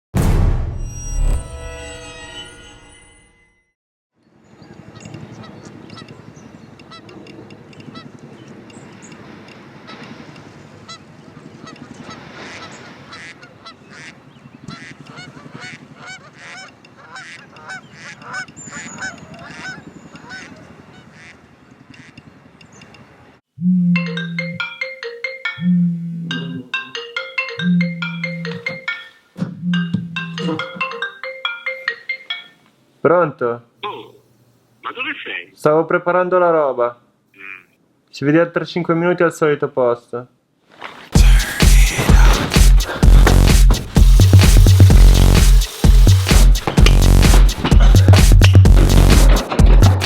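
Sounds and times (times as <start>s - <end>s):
deep boom: 0.2s - 1.5s, 41.2s - 50.0s
geese honking: 9.8s - 22.2s
sustained ringing tones: 23.7s - 28.8s.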